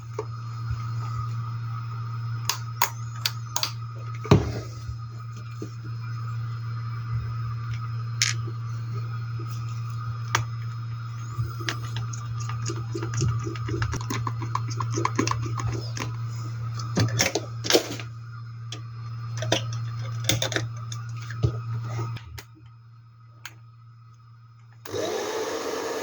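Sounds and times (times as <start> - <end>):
steady low hum: 0.0 - 25.0
hair dryer running: 24.8 - 26.0.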